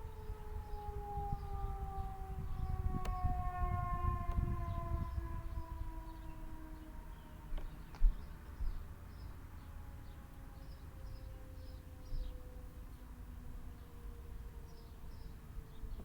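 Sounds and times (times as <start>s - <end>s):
warning siren winding down: 0.0s - 7.6s.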